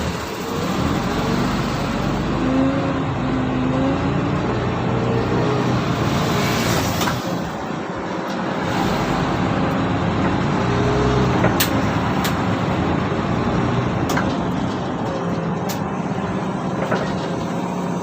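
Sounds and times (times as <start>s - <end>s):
bus diesel engine running: 0.0s - 18.0s.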